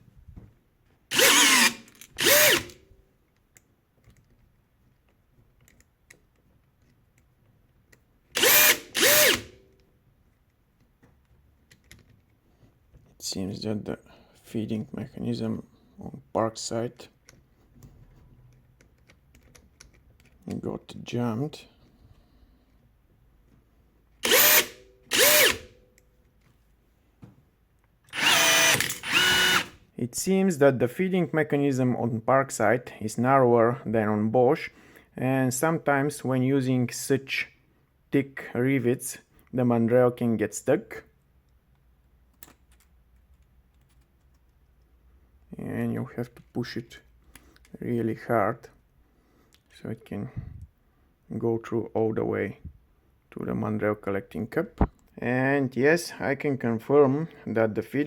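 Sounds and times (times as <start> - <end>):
rivet gun motor running: 1.1 - 2.8, 8.4 - 9.5, 24.2 - 25.7, 28.1 - 29.8.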